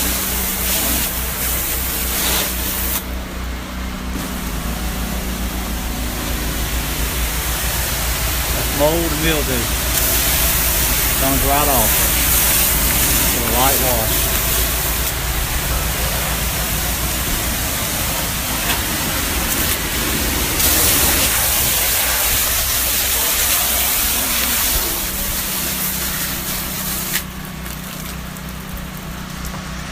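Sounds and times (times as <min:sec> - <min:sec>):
water spray hissing: 0:00.0 - 0:03.3, 0:04.1 - 0:29.4
engine running: 0:00.0 - 0:29.9.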